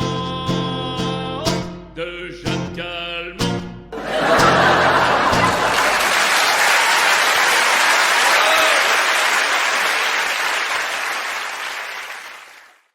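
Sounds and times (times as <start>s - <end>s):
audience applauding: 4.0s - 12.9s.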